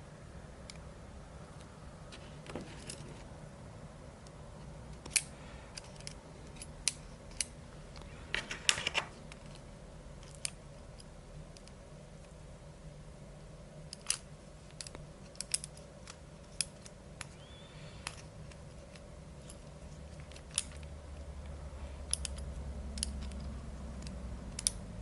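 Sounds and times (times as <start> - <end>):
small plastic parts clicking: 4.2 - 9.6, 13.9 - 24.8.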